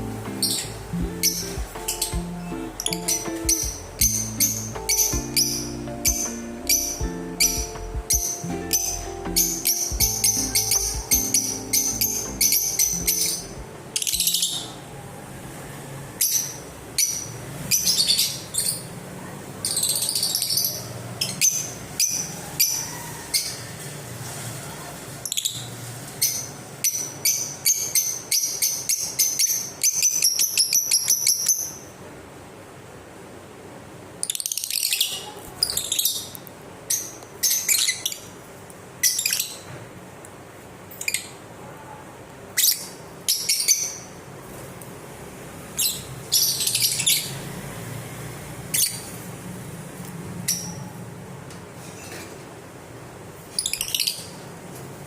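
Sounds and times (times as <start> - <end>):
lovebirds chirping: 0.0 - 15.0, 45.7 - 47.5, 53.5 - 54.4.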